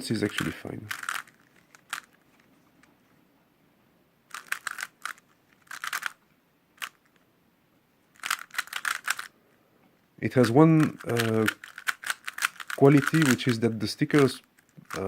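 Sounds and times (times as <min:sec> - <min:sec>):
puzzle cube plastic clacking: 0:00.2 - 0:03.0, 0:04.3 - 0:06.2, 0:06.8 - 0:07.2, 0:08.1 - 0:09.3, 0:10.3 - 0:15.0.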